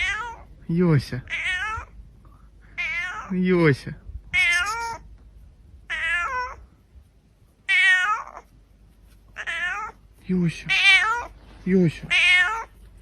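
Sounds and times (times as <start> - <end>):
cat meowing: 0.0 - 0.5, 1.2 - 2.0, 2.8 - 3.3, 4.3 - 5.1, 5.9 - 6.7, 7.6 - 8.5, 9.4 - 10.0, 10.7 - 12.8.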